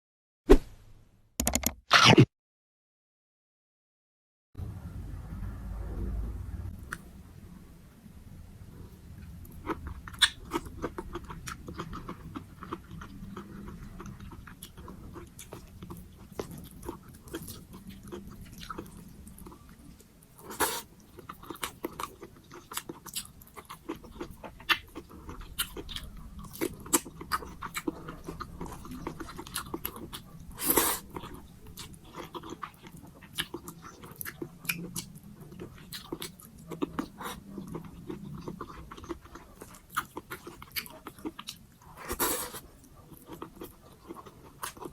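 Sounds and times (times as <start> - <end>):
wet chewing and mouth sounds: 9.2 - 44.9.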